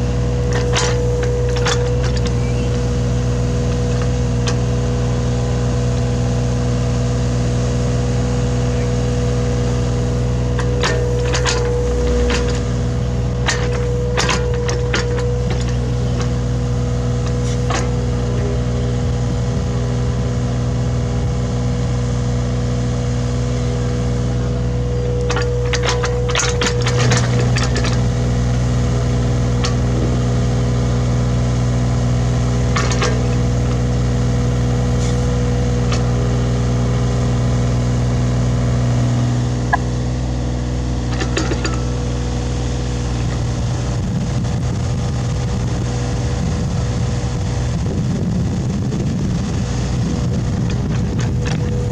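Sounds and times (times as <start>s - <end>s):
excavator diesel engine running: 0.0s - 51.9s
bucket knocking and scraping soil: 17.1s - 18.6s.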